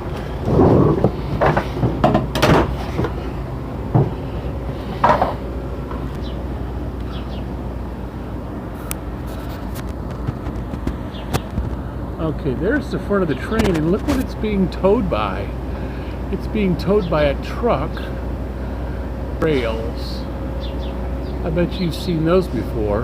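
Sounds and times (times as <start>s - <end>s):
train cars clunking: 0.0s - 8.6s
train rumbling: 0.0s - 23.0s.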